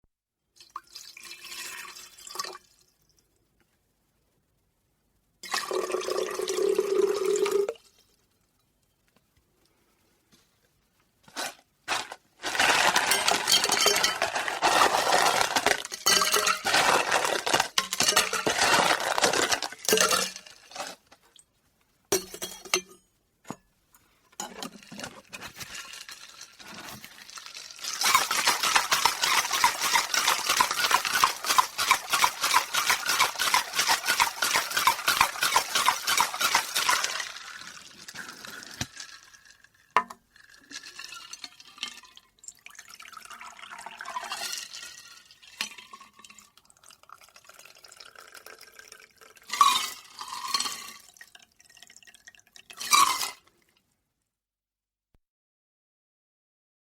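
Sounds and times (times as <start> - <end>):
ice cubes clinking into a glass: 11.4 - 21.0, 25.4 - 39.6, 47.2 - 51.3, 52.7 - 53.4.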